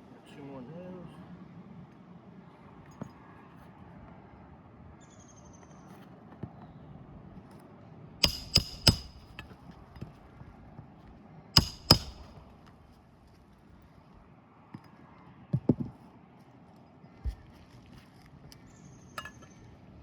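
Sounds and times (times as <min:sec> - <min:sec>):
hammer driving nails: 0:08.2 - 0:09.4, 0:11.6 - 0:12.4.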